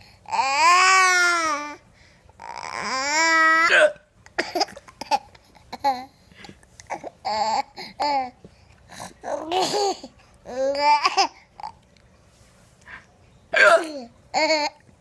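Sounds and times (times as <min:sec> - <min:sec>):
high voiced hiccups: 0:03.6 - 0:04.1, 0:13.6 - 0:14.1.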